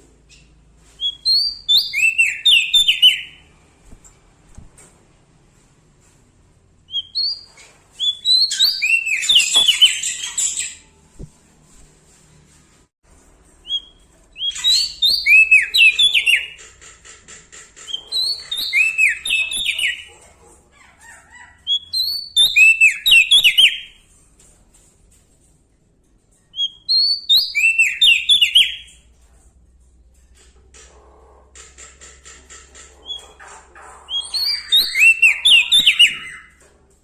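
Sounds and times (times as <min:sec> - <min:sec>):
songbird whistled song: 0:00.3 - 0:03.5, 0:06.9 - 0:10.9, 0:13.6 - 0:16.6, 0:17.9 - 0:20.1, 0:21.7 - 0:24.0, 0:26.5 - 0:29.0, 0:34.1 - 0:36.6.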